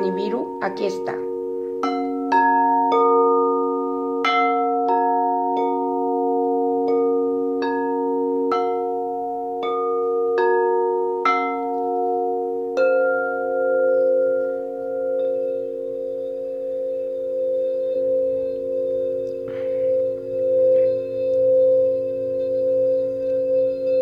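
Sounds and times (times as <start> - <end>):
singing bowls ringing: 0.0 - 24.0.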